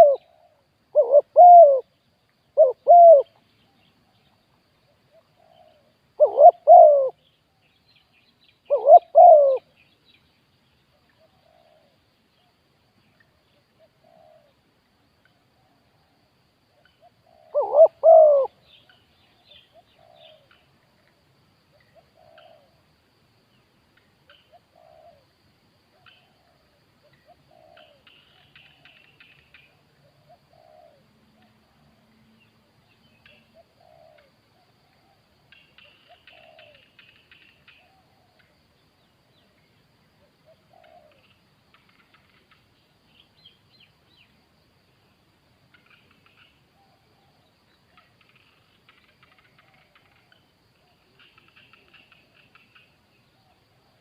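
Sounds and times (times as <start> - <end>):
doves cooing: 0.0 - 1.9, 2.6 - 3.4, 5.1 - 7.2, 8.7 - 9.7, 17.0 - 18.6, 22.0 - 22.8, 26.2 - 28.9, 30.0 - 31.8, 33.4 - 35.2, 35.8 - 37.1, 40.4 - 42.5
small birds chirping: 0.0 - 14.6, 25.9 - 44.4, 45.6 - 54.0.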